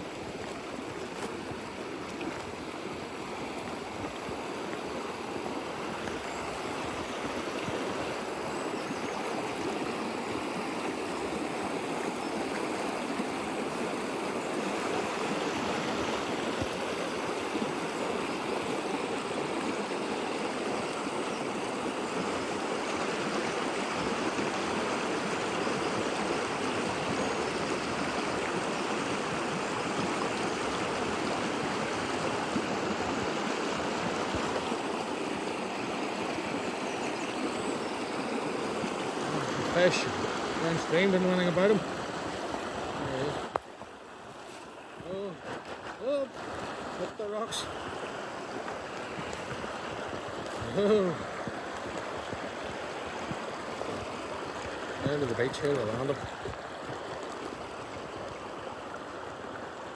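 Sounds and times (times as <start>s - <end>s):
river water over stones: 0.0s - 59.9s.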